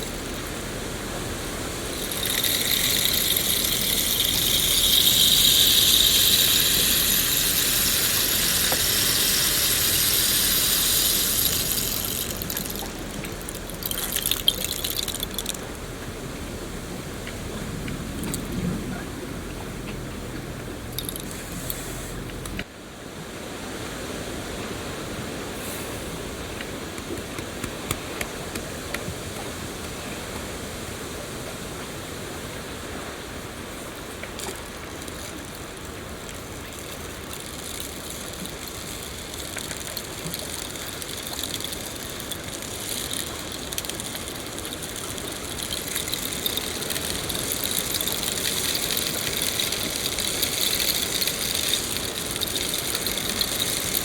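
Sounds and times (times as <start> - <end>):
rain drop ticks: 0.0 - 16.5, 17.2 - 18.6, 19.4 - 22.7, 34.3 - 54.0.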